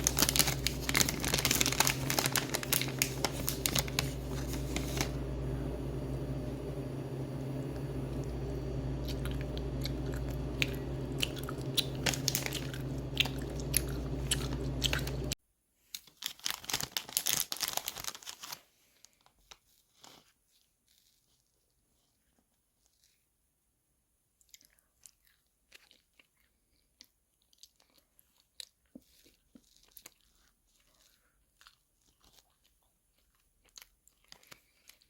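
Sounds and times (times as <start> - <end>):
person chewing crunchy food: 0.0 - 5.2, 9.0 - 15.4, 24.4 - 35.0
steady hum: 0.0 - 15.4.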